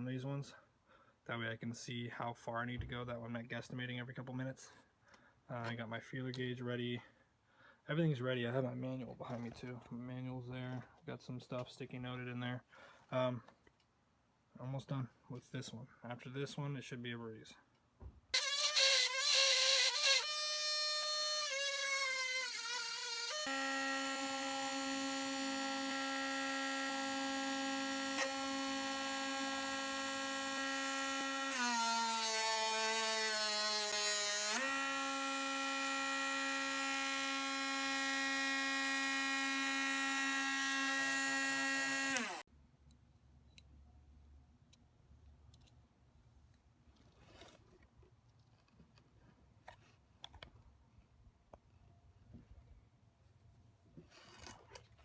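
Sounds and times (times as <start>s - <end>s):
electric grinder motor whining: 18.4s - 42.4s.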